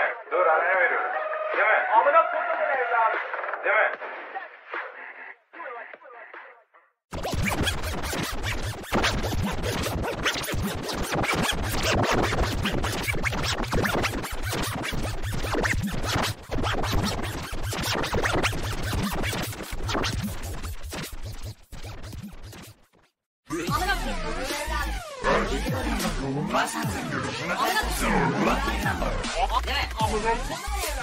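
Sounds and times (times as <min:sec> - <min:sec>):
record scratching: 0:07.1 - 0:22.6
electronic music with driving beat: 0:07.1 - 0:22.8, 0:23.5 - 0:31.0.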